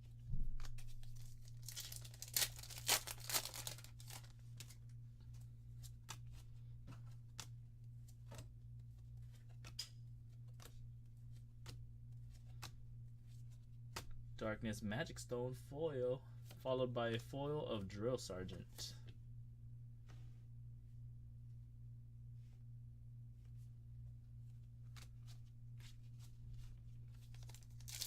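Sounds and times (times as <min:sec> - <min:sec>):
foil pack tearing and crinkling: 0:01.1 - 0:04.8, 0:27.3 - 0:28.0
cards clicking and tapping: 0:09.4 - 0:10.8.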